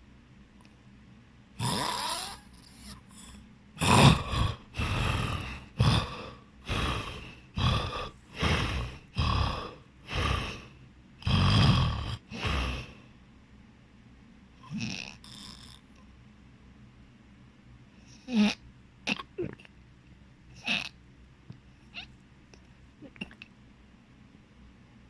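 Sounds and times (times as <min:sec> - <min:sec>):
person snoring loudly: 0:01.6 - 0:13.0, 0:14.6 - 0:15.8.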